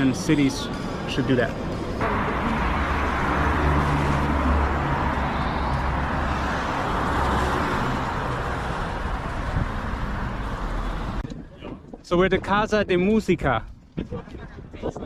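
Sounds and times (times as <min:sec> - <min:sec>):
vehicle engines humming: 0:00.0 - 0:11.4
tyre and street noise: 0:00.0 - 0:15.0.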